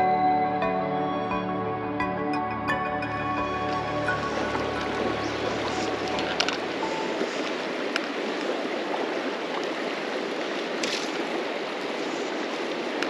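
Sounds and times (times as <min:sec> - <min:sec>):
background music: 0:00.0 - 0:07.5
river rushing over riffle: 0:03.6 - 0:13.0
faint clicks: 0:05.6 - 0:08.5.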